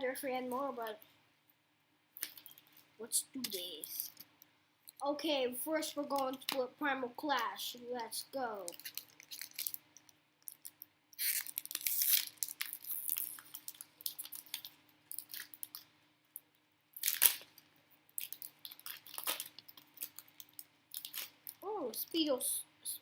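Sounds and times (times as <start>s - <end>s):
foil wrapper tearing and crinkling: 8.7s - 9.8s, 10.5s - 15.9s, 17.0s - 17.6s, 18.2s - 21.6s.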